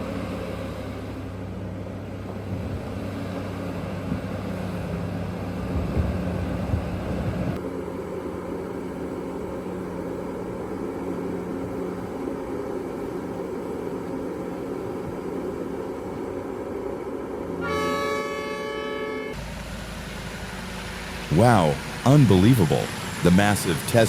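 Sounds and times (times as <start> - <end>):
heavy machinery engine humming: 0.0 - 24.0
vehicle horn blast: 17.6 - 19.4.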